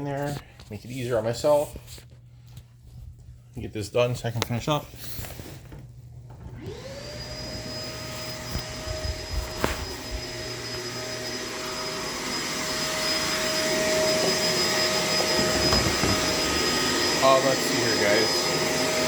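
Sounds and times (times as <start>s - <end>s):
vacuum cleaner motor whining: 6.3s - 19.0s.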